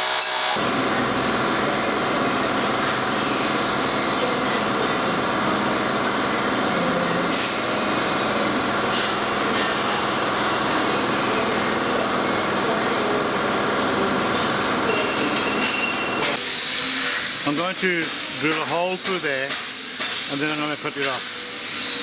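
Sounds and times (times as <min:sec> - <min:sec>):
lathe motor humming: 0:00.0 - 0:14.9.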